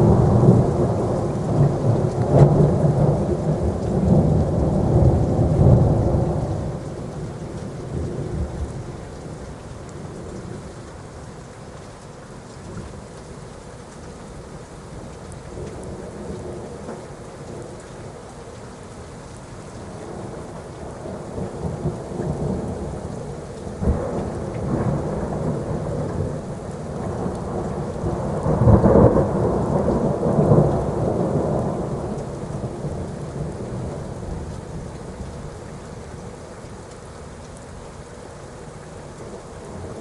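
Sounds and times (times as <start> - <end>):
steady rain: 0.0 - 40.0
thunder rolling and cracking: 23.8 - 34.5.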